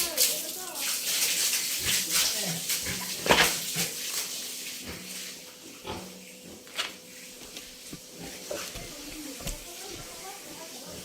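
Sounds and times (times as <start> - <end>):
pigs grunting: 1.7 - 4.0, 4.8 - 6.8, 8.1 - 11.0.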